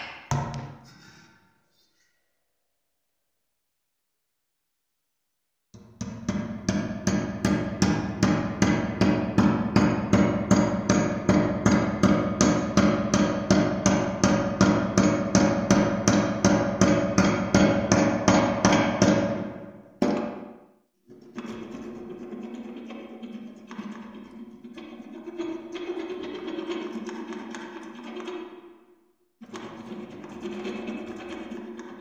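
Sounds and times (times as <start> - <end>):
hammering on ringing metal: 6.2 - 19.4.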